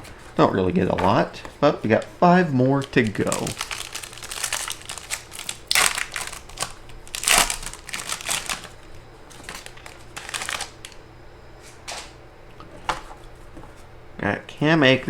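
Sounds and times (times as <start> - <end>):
plastic wrapper crinkling: 1.8 - 11.0.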